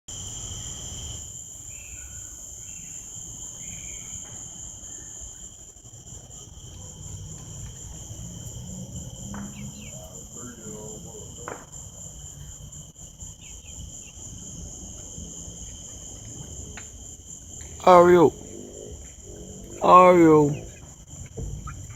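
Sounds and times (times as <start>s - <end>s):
high-pitched insect chorus: 0.1s - 21.9s.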